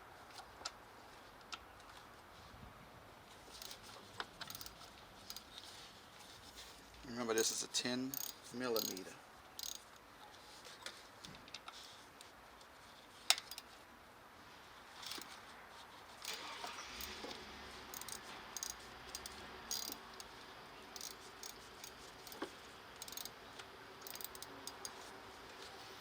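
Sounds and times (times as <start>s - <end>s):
metallic clinks of hand tools: 8.2s - 9.8s, 18.0s - 20.0s, 21.0s - 21.6s, 23.0s - 23.3s, 24.0s - 24.9s.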